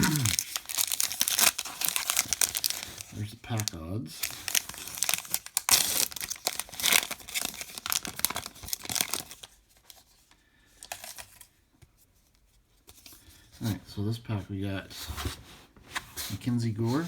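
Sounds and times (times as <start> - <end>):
card pack wrapper tearing: 0.0 - 10.0, 10.8 - 11.5
faint rustles of handling: 9.4 - 17.0.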